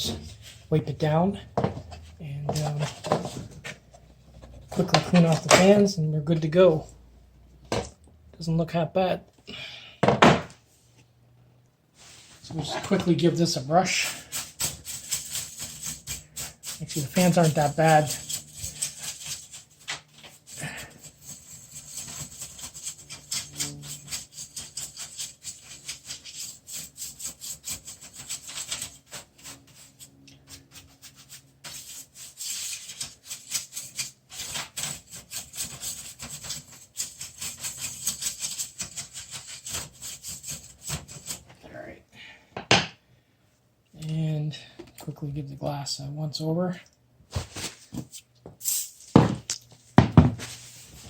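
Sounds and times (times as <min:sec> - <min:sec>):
scratchy brush strokes: 0:12.0 - 0:41.5.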